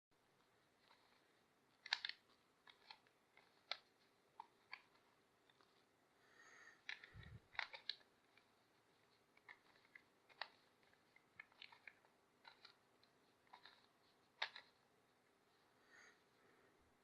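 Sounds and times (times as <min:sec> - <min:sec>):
plastic puzzle cube clicking: 0:00.8 - 0:05.9, 0:06.8 - 0:14.9.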